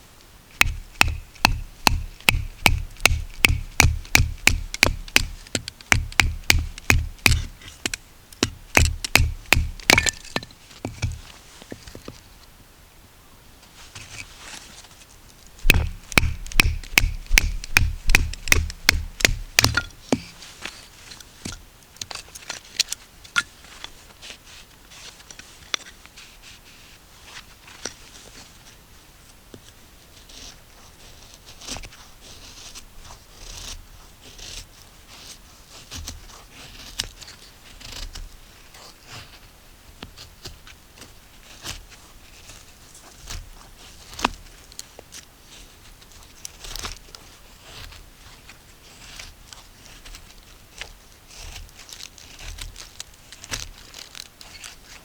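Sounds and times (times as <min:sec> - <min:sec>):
sharp knocks: 0:00.6 - 0:07.5, 0:08.4 - 0:11.2, 0:15.6 - 0:20.3
light clicks and crunches: 0:49.2 - 0:55.0.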